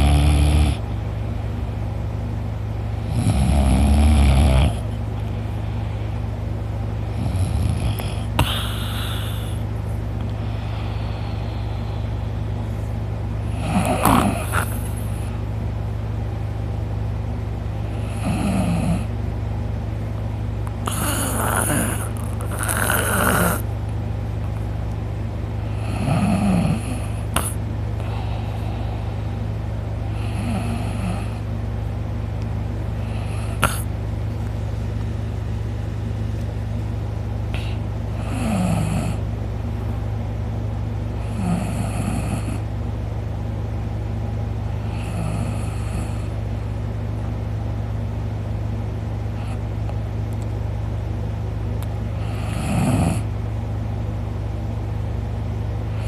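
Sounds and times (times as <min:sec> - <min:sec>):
man snoring loudly: 0:00.0 - 0:00.9, 0:03.0 - 0:04.9, 0:07.1 - 0:09.6, 0:13.4 - 0:15.2, 0:17.9 - 0:19.1, 0:20.8 - 0:23.7, 0:25.7 - 0:28.7, 0:30.1 - 0:31.4, 0:33.0 - 0:33.9, 0:37.6 - 0:39.2, 0:41.2 - 0:42.7, 0:44.8 - 0:46.3, 0:52.2 - 0:53.3
steady low hum: 0:00.0 - 0:56.0.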